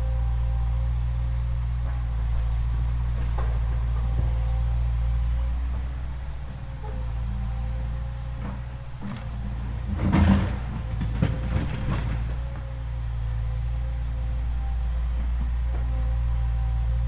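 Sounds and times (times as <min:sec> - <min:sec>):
clattering knocks: 0:08.3 - 0:12.7.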